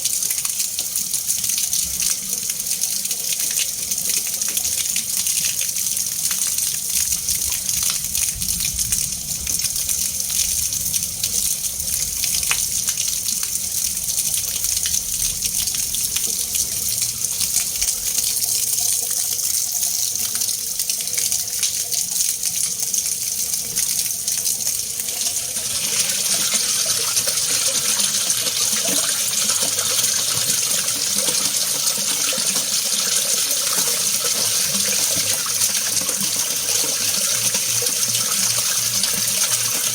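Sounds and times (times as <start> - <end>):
water rushing and splashing: 23.2 - 39.9.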